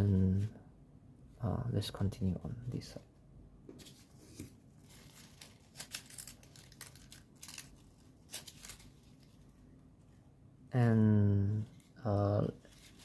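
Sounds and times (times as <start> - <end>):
paper rustling and crinkling: 3.8 - 9.6, 11.6 - 13.0.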